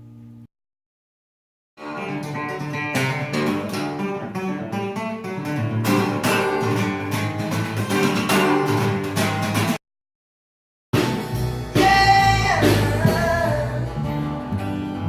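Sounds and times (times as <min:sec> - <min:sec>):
acoustic guitar strumming: 0:01.8 - 0:09.8, 0:11.0 - 0:15.0.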